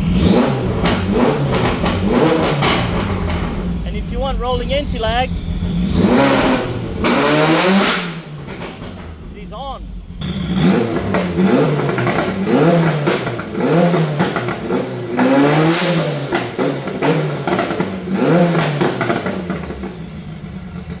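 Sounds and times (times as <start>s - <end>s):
car engine revving in blips: 0.0s - 21.0s
exhaust crackles: 0.0s - 21.0s.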